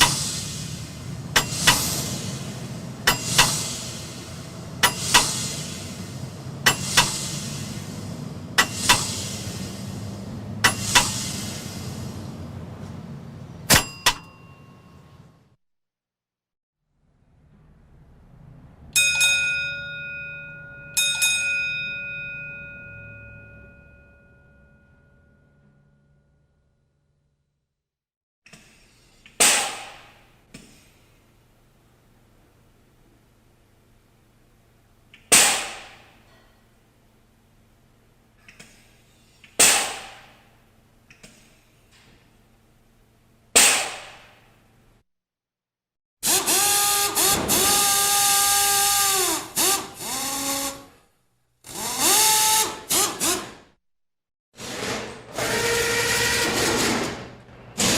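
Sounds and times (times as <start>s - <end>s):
metal object struck ringing: 19.0s - 26.4s
loud sharp impacts: 39.6s - 40.5s, 43.6s - 44.5s.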